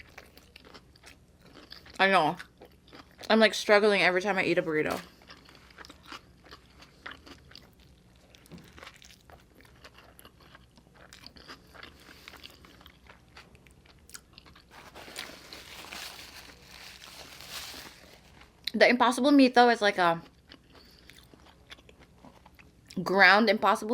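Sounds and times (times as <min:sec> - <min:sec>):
person chewing food: 0:00.0 - 0:03.3, 0:05.1 - 0:18.7, 0:20.2 - 0:23.0
dense rustling: 0:14.7 - 0:18.3.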